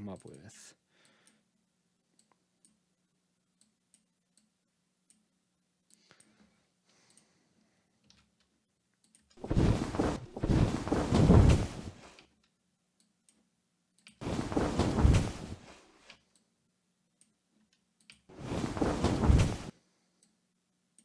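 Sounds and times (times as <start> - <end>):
loud wing flaps: 9.4 - 12.1, 14.2 - 15.9, 18.3 - 19.7.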